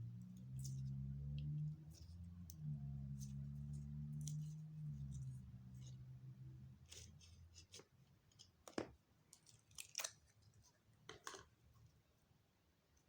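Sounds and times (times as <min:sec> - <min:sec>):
low steady hum: 0:00.0 - 0:07.6.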